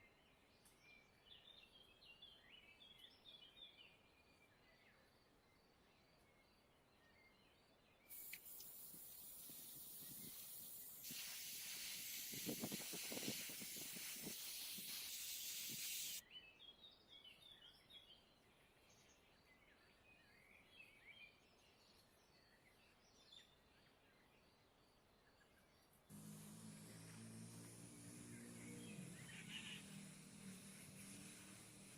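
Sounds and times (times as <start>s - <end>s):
high hiss of spraying: 8.1s - 16.2s, 26.1s - 31.9s
faint high chirps: 26.1s - 31.9s.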